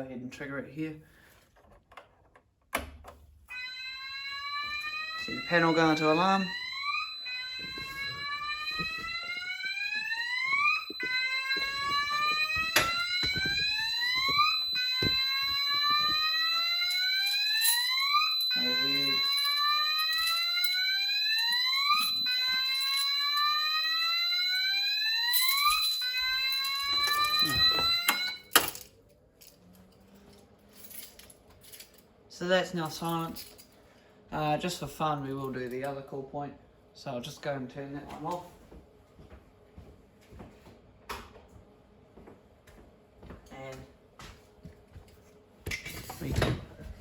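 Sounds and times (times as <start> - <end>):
fire alarm rising whoop: 3.5 - 28.5
high-pitched alarm tone: 3.5 - 28.6.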